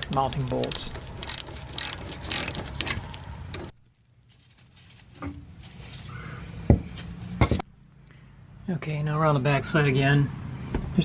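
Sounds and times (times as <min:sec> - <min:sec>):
ratchet wrench clicking: 0:00.0 - 0:03.1.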